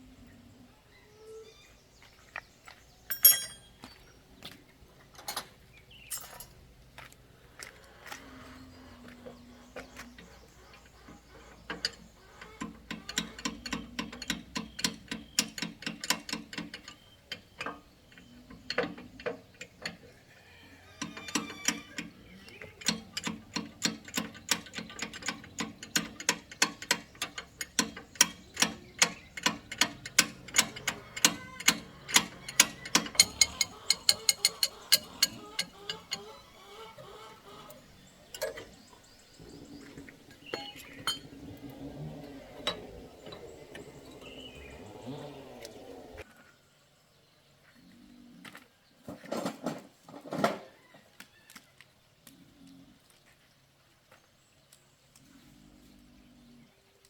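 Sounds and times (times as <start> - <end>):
ratchet-like mechanical clicking: 22.8 - 37.8.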